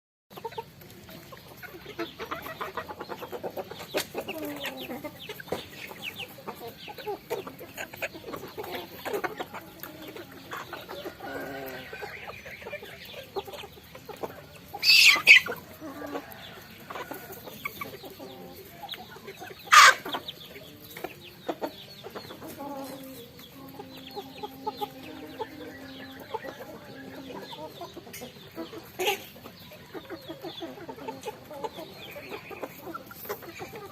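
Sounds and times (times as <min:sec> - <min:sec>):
chickens clucking: 0:00.3 - 0:33.9.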